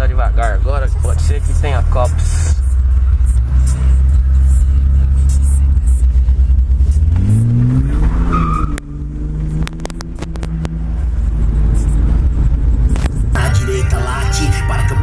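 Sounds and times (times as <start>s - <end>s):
car engine revving: 0.0s - 15.0s
music: 0.4s - 8.3s, 11.5s - 15.0s
sharp exhaust pops: 7.1s - 10.9s.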